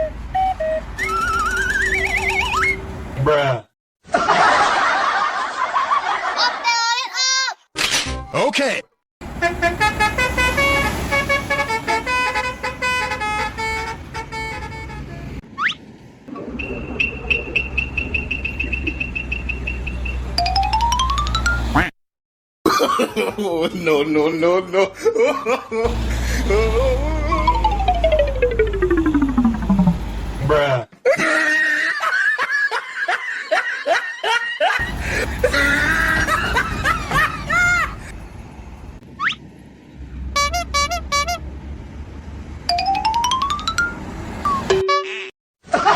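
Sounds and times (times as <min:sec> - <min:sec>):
multi-tone bus horn melody: 0:09.2 - 0:15.4, 0:25.9 - 0:30.2, 0:40.3 - 0:41.5
held pitched tone: 0:20.4 - 0:21.9, 0:26.5 - 0:30.5
low engine rumble: 0:25.9 - 0:30.6
low hum: 0:25.9 - 0:30.6.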